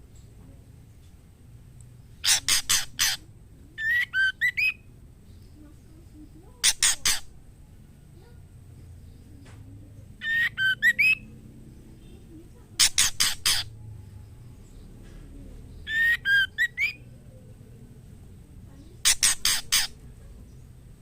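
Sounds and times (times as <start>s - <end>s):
harsh rasping bird notes: 2.2s - 3.2s, 6.6s - 7.4s, 12.8s - 13.8s, 15.9s - 17.1s, 19.0s - 20.0s
bird whistled call: 3.8s - 4.8s, 10.2s - 11.3s, 15.9s - 17.0s.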